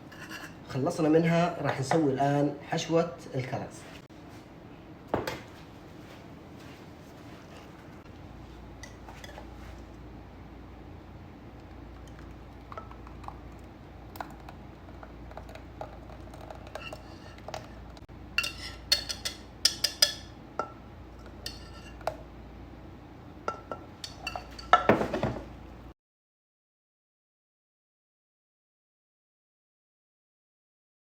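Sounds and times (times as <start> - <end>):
utensils clinking against dishes: 18.4 - 22.1, 23.5 - 25.4.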